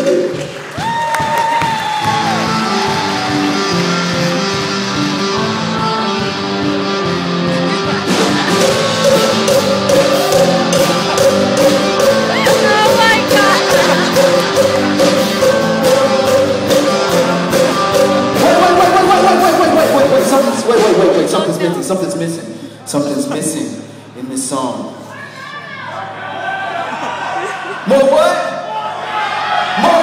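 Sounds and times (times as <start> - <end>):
drums: 0.0 - 22.3
guitar chords: 2.1 - 21.7
person singing: 7.8 - 20.9.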